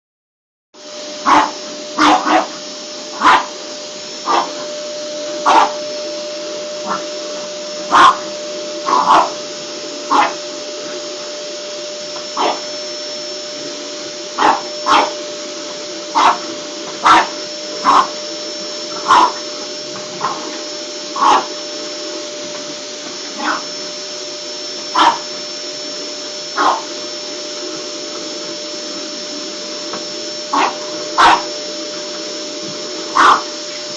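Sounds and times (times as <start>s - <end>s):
vacuum cleaner running: 0.8s - 33.9s
dog barking: 1.2s - 2.6s, 3.2s - 3.6s, 4.2s - 4.6s, 5.4s - 5.8s, 6.8s - 7.0s, 7.9s - 9.4s, 10.1s - 10.4s, 12.4s - 12.6s, 14.4s - 15.2s, 16.2s - 18.2s, 19.0s - 19.4s, 20.2s - 20.5s, 21.2s - 21.5s, 23.4s - 23.7s, 25.0s - 25.3s, 26.6s - 26.9s, 30.5s - 31.5s, 33.1s - 33.5s.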